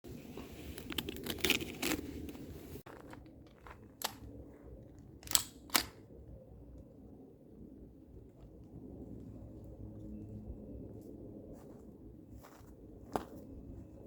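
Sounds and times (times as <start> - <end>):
sharp mechanical clicks: 5.2 - 6.0.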